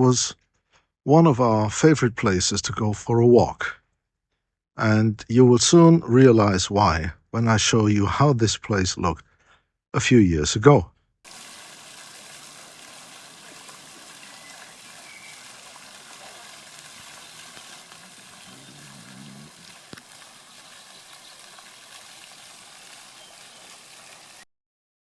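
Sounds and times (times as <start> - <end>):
water rushing: 11.3 - 24.5.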